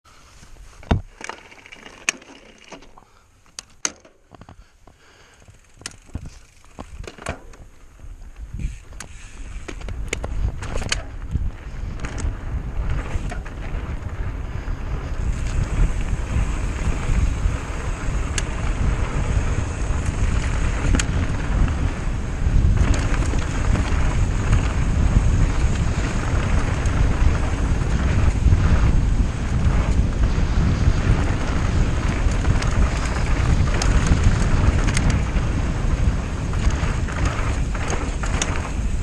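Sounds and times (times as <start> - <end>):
bike clicks and rattles: 0.2 - 39.0
wind buffeting microphone: 5.4 - 39.0.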